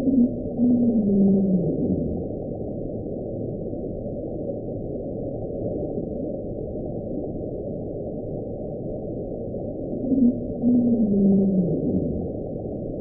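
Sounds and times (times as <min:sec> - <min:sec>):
low underwater rumble: 0:00.0 - 0:13.0.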